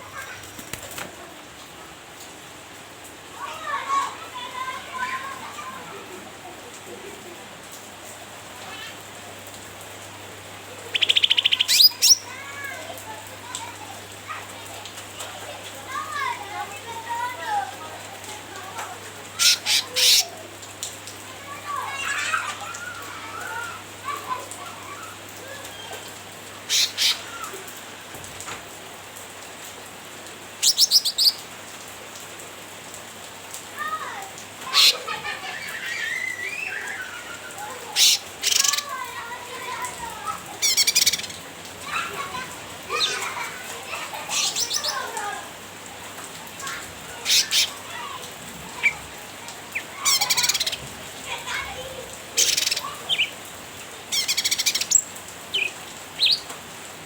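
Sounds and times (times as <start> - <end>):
background hiss: 0.0 - 57.0
bulbul chattering calls: 10.9 - 12.2, 19.4 - 20.4, 26.7 - 27.3, 30.6 - 31.4, 34.7 - 35.0, 38.0 - 38.9, 40.6 - 41.4, 47.2 - 47.7, 50.0 - 50.8, 52.4 - 53.4, 54.1 - 56.5.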